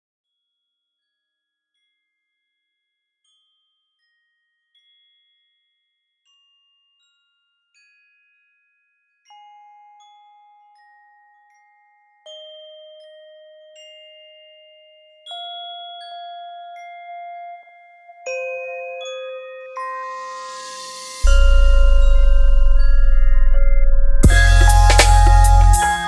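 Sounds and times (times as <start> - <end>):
bell-like mallet notes: 9.3 - 26.0.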